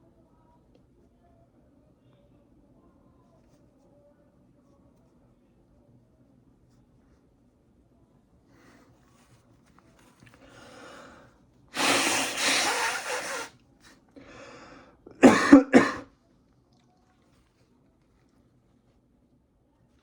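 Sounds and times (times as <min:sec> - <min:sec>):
person breathing: 0:10.3 - 0:13.5, 0:14.2 - 0:15.0
person coughing: 0:15.1 - 0:16.1.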